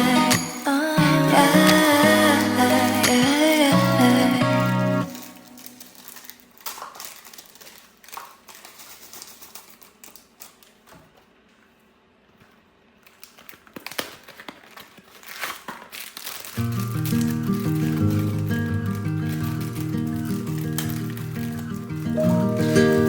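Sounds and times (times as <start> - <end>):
rustling: 5.1 - 23.0.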